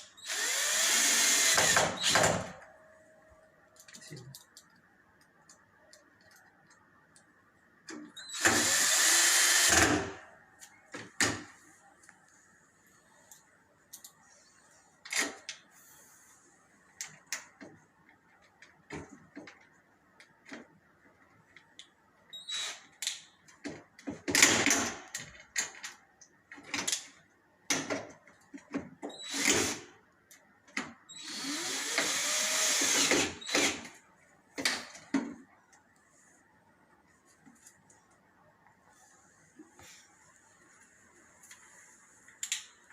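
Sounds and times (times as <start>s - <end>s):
power screwdriver driving screws: 0.2s - 2.2s, 31.2s - 33.9s.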